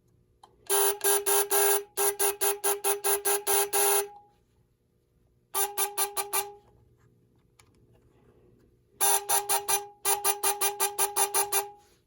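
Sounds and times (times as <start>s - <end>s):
telegraph buzzer beeps: 0.7s - 4.2s, 5.6s - 6.6s, 9.0s - 11.8s.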